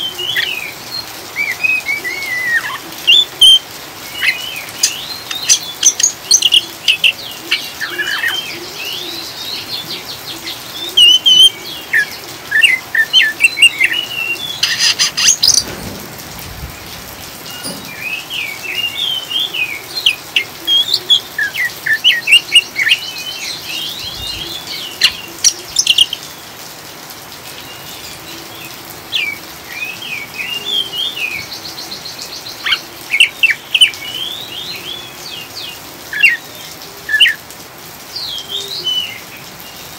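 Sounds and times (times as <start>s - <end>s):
rain hiss: 0.0s - 39.9s
bird chattering chirps and whistles: 14.6s - 15.7s.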